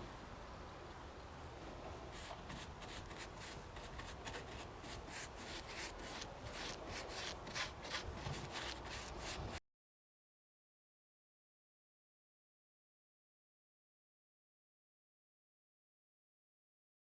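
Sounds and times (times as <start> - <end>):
paintbrush scratchy swishes: 2.1 - 9.6.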